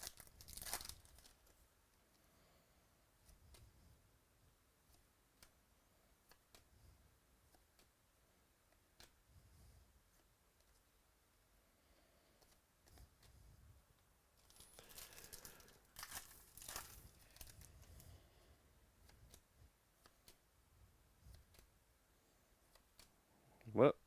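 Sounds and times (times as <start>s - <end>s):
wrapper tearing and crinkling: 0.0s - 1.5s, 14.8s - 17.7s.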